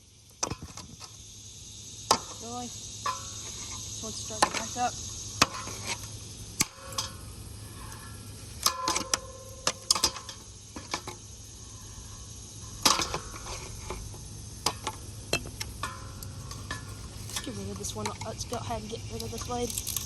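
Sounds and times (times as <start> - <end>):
ceiling fan humming: 0.0 - 20.0
metallic clicks and clanks: 7.8 - 11.2, 19.1 - 20.0.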